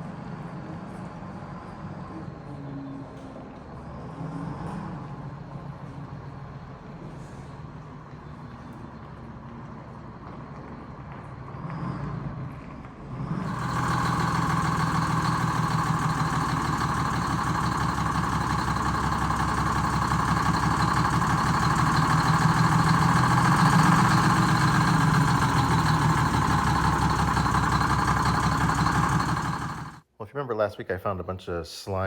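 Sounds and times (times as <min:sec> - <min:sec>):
diesel engine running: 0:13.4 - 0:30.0.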